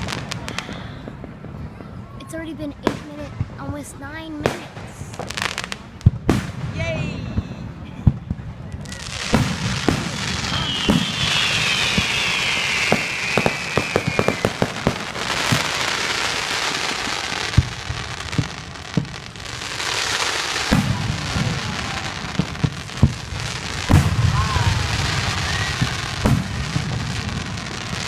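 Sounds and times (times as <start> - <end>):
crackling hiss: 0.0 - 6.9, 7.7 - 28.0
firework bangs: 0.0 - 28.0
firework sharp pops: 2.8 - 3.8, 4.4 - 6.9, 8.0 - 28.0
firework falling whistle: 8.9 - 17.6, 23.7 - 28.0.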